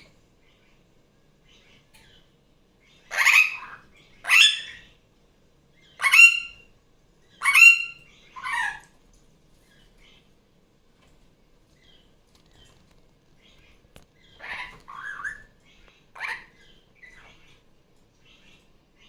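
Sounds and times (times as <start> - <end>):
parakeet squawking: 3.1 - 4.9, 6.0 - 6.6, 7.4 - 8.9, 14.2 - 15.5, 16.1 - 17.6.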